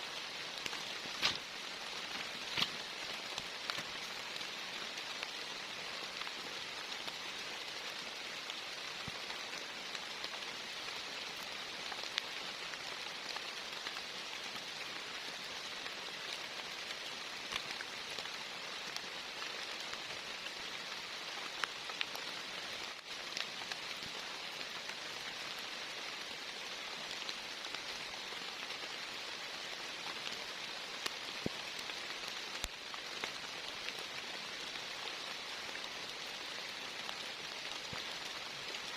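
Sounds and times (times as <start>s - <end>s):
heavy rain: 0.0s - 38.9s
raindrops ticking close by: 0.0s - 38.9s.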